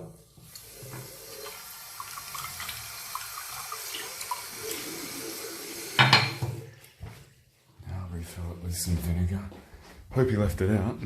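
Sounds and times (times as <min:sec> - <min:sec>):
tap water running into sink: 0:00.4 - 0:07.2.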